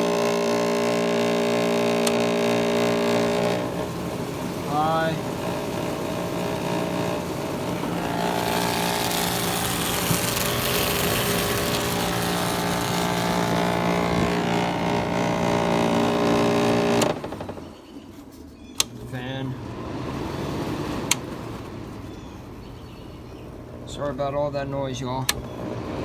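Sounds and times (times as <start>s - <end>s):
air conditioner running: 0.0s - 17.8s.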